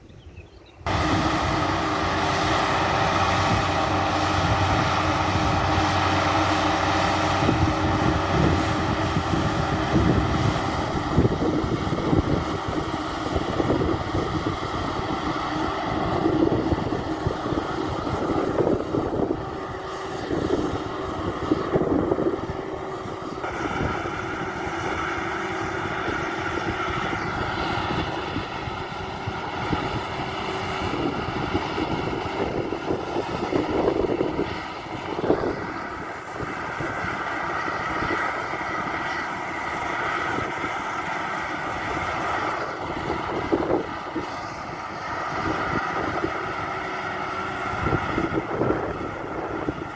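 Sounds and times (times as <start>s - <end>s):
combine harvester running: 0.8s - 49.9s
machinery whine: 0.8s - 49.9s.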